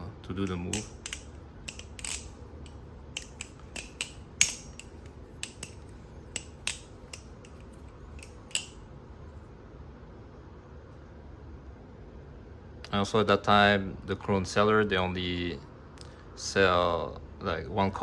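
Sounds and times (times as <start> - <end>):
butterfly knife handles clacking: 0.4 - 8.8.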